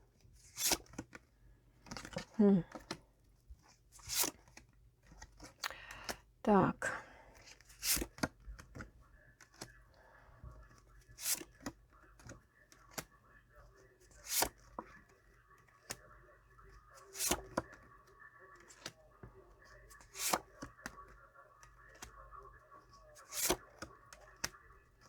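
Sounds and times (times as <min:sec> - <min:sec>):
faint card rustling: 0:00.1 - 0:06.2, 0:07.3 - 0:25.0
cards slapping on a table: 0:23.3 - 0:23.9.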